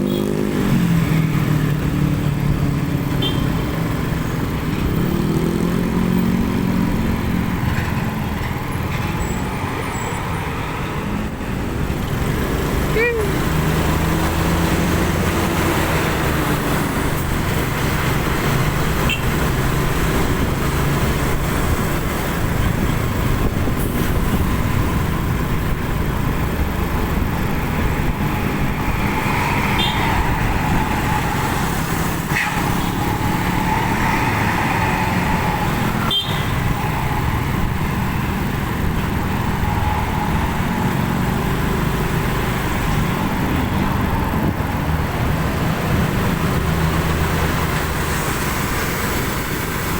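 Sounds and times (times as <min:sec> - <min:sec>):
engine rumble: 0:00.0 - 0:49.9
road and tyre noise: 0:00.0 - 0:49.9.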